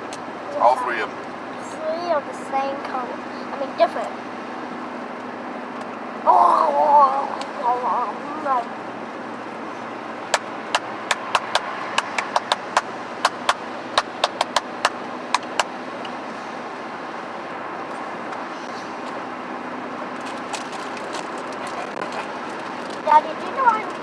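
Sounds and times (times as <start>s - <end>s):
car interior road noise: 0.0s - 24.0s
sharp clicks or taps: 10.3s - 16.2s.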